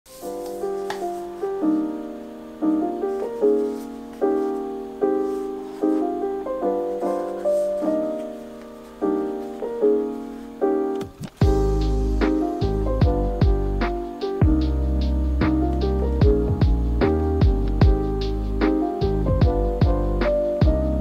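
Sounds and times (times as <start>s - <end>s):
soft piano chords: 0.1s - 21.0s.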